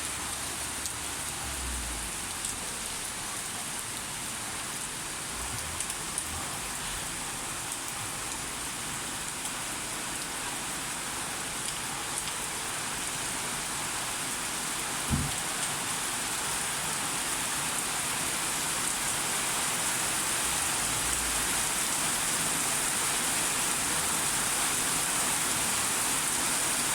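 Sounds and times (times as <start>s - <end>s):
heavy rain falling: 0.0s - 26.9s
dull thump: 15.1s - 15.4s.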